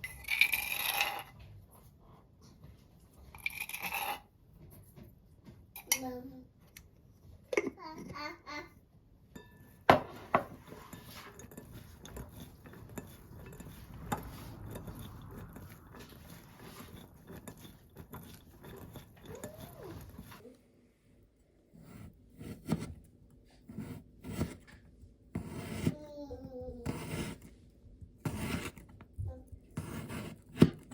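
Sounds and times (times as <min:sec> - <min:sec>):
utensils and dishes clinking: 0:00.0 - 0:01.4, 0:09.3 - 0:20.4.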